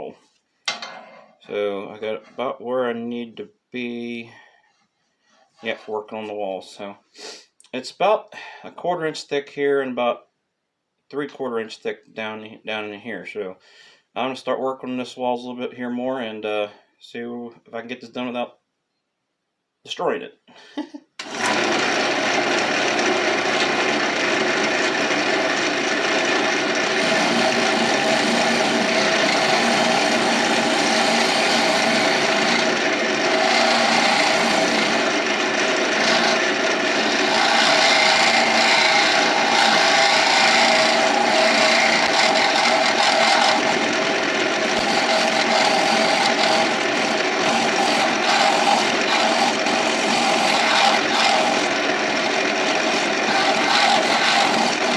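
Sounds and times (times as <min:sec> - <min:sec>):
lathe tool scraping wood: 0:21.2 - 0:54.9.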